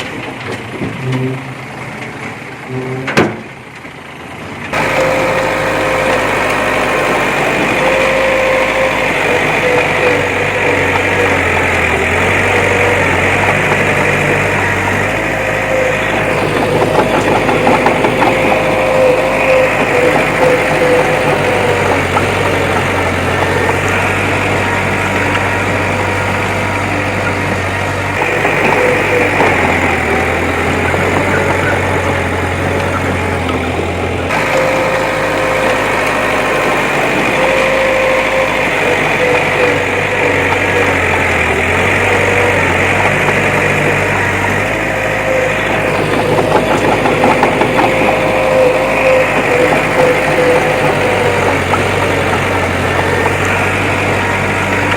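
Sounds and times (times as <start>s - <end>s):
diesel engine running: 0.0s - 54.9s.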